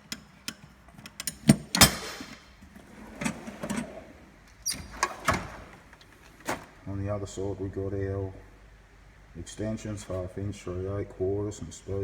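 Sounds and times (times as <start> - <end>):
metal drawers clunking: 0.0 - 6.8
drawer sliding rattle: 1.3 - 6.8.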